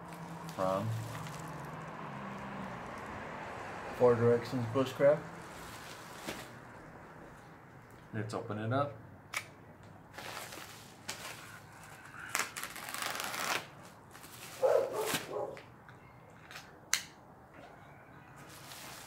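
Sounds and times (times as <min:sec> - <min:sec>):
packaging rustling and tearing: 0:00.0 - 0:01.9, 0:05.5 - 0:06.6, 0:10.1 - 0:15.6.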